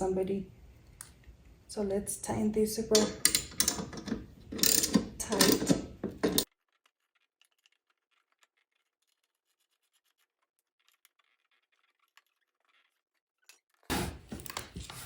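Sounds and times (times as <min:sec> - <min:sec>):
tool clicking and scratching on metal: 0:02.9 - 0:15.0.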